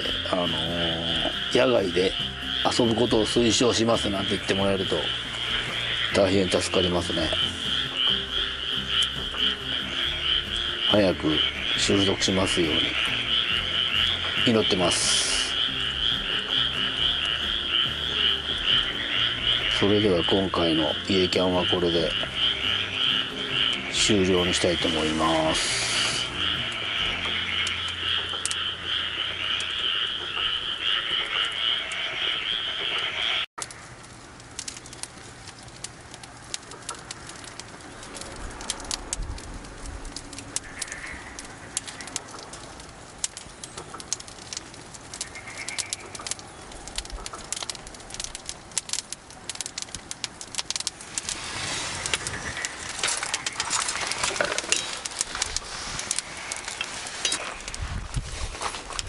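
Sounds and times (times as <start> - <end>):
sharp clicks and crackles: 0.0 - 32.1, 33.6 - 59.0
frogs calling: 0.0 - 59.0.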